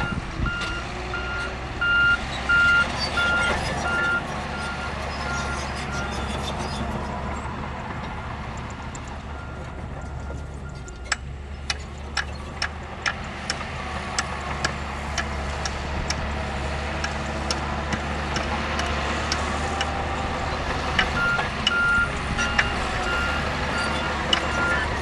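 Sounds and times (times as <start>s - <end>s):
reversing alarm beeping: 0.0s - 6.0s, 21.0s - 25.0s
diesel machinery running: 0.0s - 25.0s.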